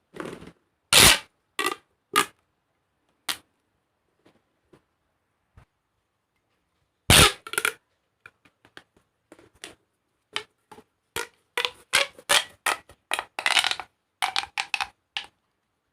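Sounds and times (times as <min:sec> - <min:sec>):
plastic pop tubes crackling: 0:01.0 - 0:02.4, 0:07.1 - 0:15.4.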